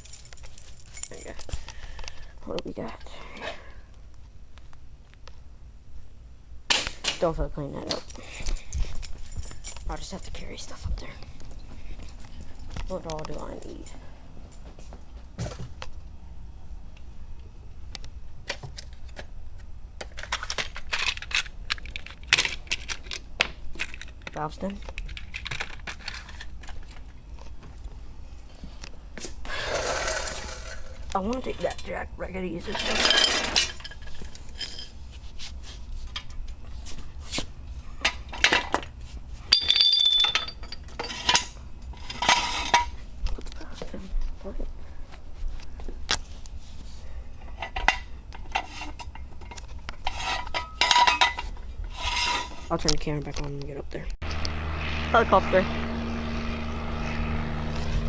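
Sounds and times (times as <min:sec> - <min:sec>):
low steady hum: 0:00.0 - 0:58.0
small tools clattering: 0:23.8 - 0:27.1, 0:32.6 - 0:35.0, 0:38.0 - 0:43.0, 0:47.4 - 0:53.5
metal ringing: 0:39.5 - 0:40.8.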